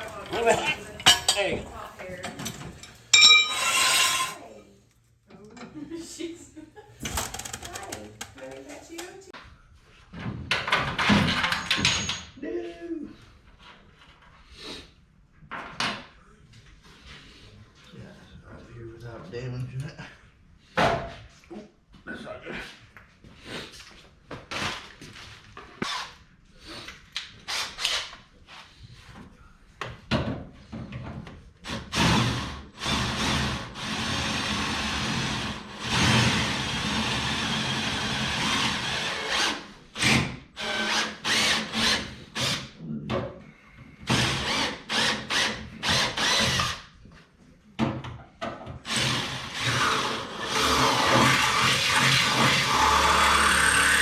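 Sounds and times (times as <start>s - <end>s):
handheld power tool running: 7.0s - 9.2s, 32.8s - 39.6s, 48.9s - 54.0s.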